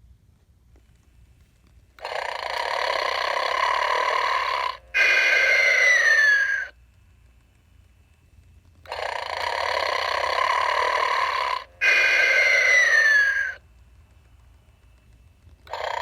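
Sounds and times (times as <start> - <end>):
toy snoring: 2.0 - 6.7, 8.9 - 13.6, 15.7 - 16.0
whistling snore falling in pitch: 2.2 - 6.7, 9.0 - 13.6.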